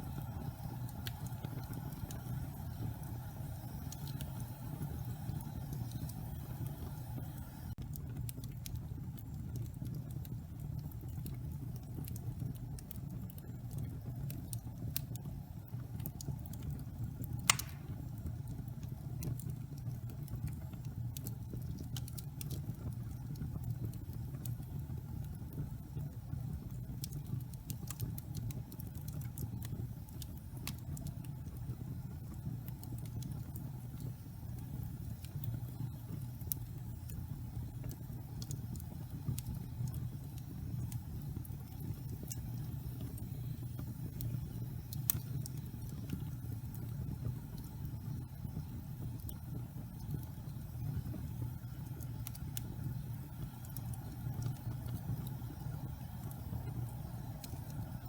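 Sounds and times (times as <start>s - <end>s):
fire crackling: 0.0s - 58.0s
low rumble of flames: 0.0s - 58.0s
sharp fire pop: 17.4s - 18.1s.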